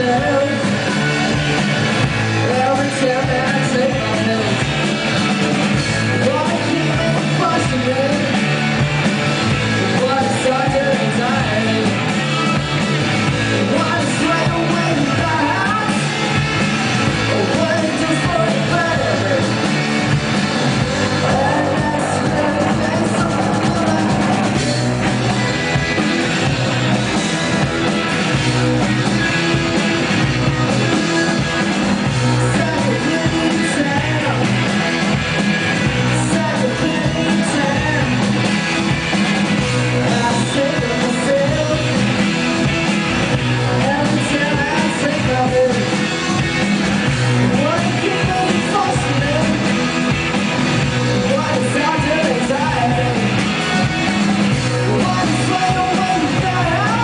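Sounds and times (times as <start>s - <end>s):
person singing: 0.0s - 1.2s, 2.4s - 4.8s, 6.1s - 8.6s, 9.7s - 12.2s, 13.5s - 16.3s, 17.1s - 19.6s, 20.9s - 25.7s, 30.7s - 34.8s, 35.9s - 38.4s, 40.0s - 42.6s, 43.4s - 46.2s, 47.4s - 50.0s, 51.1s - 54.0s, 54.7s - 57.0s
live rock band playing: 0.0s - 57.0s.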